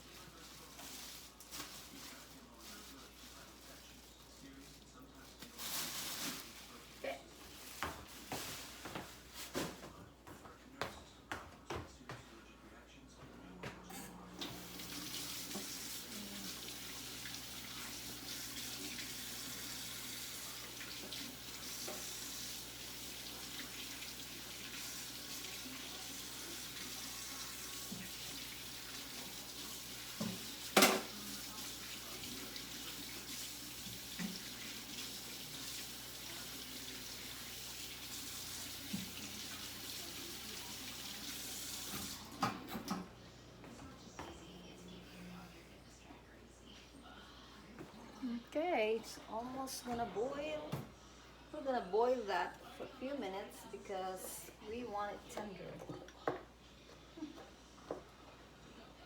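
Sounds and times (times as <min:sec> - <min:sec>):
tap water running into sink: 0:14.4 - 0:43.1.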